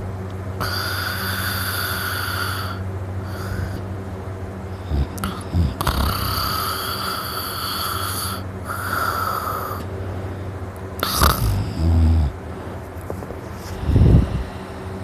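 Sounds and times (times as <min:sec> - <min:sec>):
person snoring loudly: 0:00.6 - 0:03.9, 0:04.7 - 0:09.9, 0:11.0 - 0:12.4, 0:13.7 - 0:14.6.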